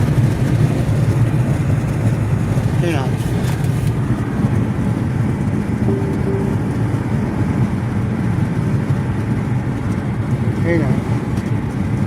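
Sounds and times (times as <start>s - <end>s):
road rumble inside car: 0.0s - 12.0s
short faint tones: 5.9s - 7.6s.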